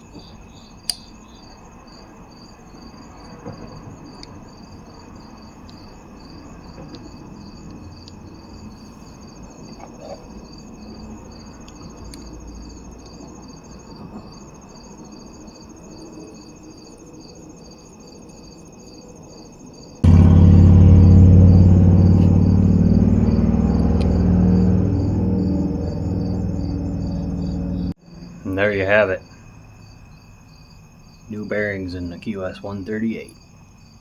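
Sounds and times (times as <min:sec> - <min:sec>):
low handling noises: 0:20.1 - 0:27.9
cricket chirping in pulses: 0:20.1 - 0:31.8.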